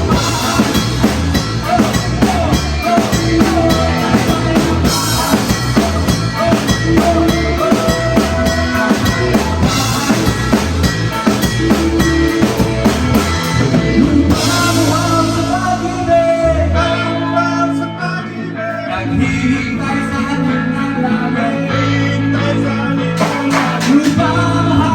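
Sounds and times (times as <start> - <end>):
drum kit: 0.0 - 17.1, 23.1 - 24.9
live rock band: 0.0 - 24.9
sustained guitar notes: 0.0 - 24.9.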